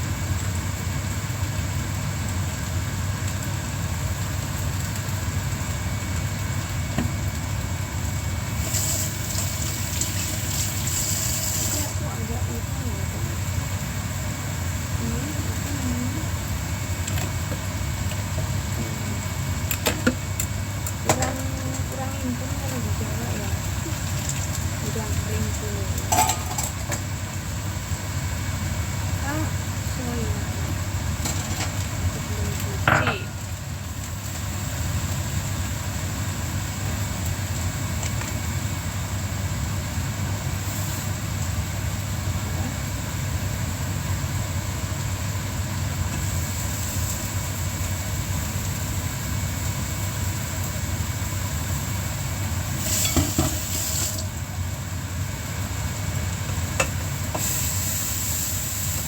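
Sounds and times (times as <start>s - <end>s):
food sizzling in a pan: 0.0s - 59.0s
utensil clattering against pan: 26.1s - 26.8s.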